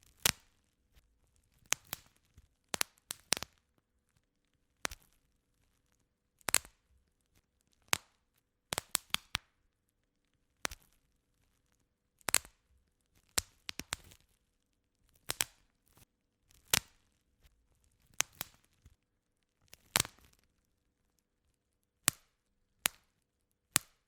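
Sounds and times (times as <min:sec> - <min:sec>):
bubble wrap popping: 0:01.5 - 0:03.6, 0:04.8 - 0:05.7, 0:06.4 - 0:09.6, 0:10.6 - 0:11.5, 0:12.2 - 0:14.4, 0:15.1 - 0:19.0, 0:19.8 - 0:20.5.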